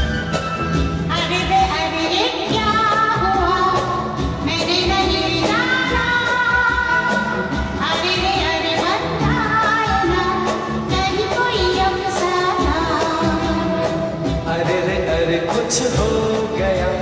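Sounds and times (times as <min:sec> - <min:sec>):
steady drum beat: 0:00.0 - 0:17.0
woman singing: 0:01.1 - 0:17.0.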